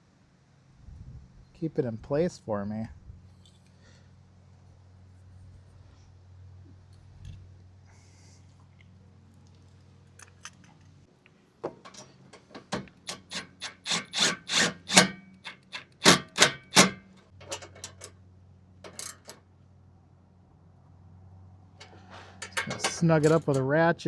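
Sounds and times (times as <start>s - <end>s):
hand ratchet clicking: 13.0s - 17.0s.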